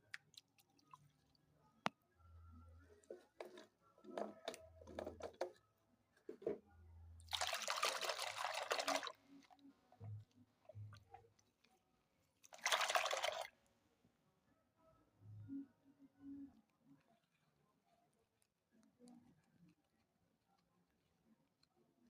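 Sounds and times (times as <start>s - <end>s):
wet squelches: 0.0s - 1.5s, 7.2s - 11.8s, 12.4s - 13.5s.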